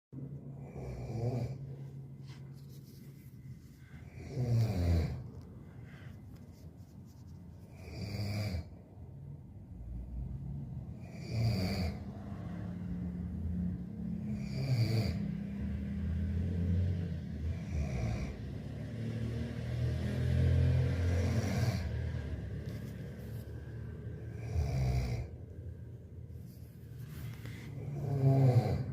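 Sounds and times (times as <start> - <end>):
person snoring: 0.6 - 1.8, 4.0 - 5.3, 7.7 - 8.8, 11.0 - 12.1, 14.2 - 15.3, 17.5 - 18.4, 20.8 - 22.2, 24.2 - 25.6, 27.6 - 28.9.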